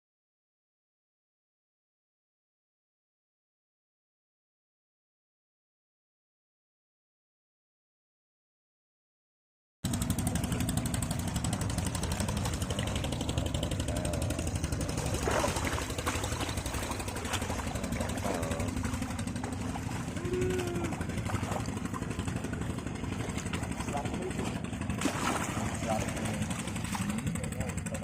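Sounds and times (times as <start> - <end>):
small engine chugging: 9.8 - 28.0
faint voices: 12.0 - 24.8, 25.6 - 28.0.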